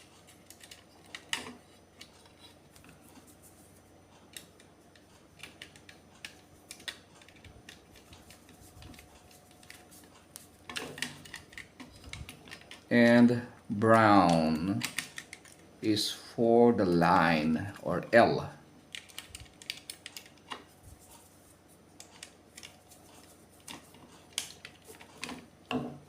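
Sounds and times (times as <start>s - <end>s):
small plastic parts clicking: 14.2s - 15.6s, 18.9s - 20.6s.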